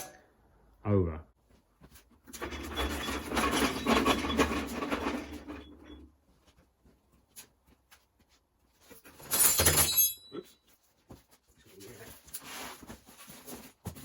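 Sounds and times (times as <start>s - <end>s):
machine scraping across workbench: 2.3s - 6.0s.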